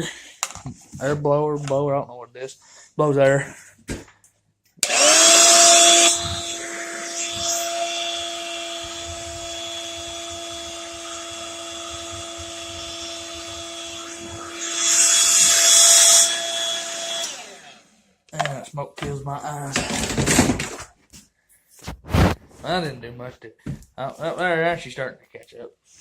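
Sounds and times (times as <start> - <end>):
air blower whining: 4.8 - 17.9, 19.0 - 20.8.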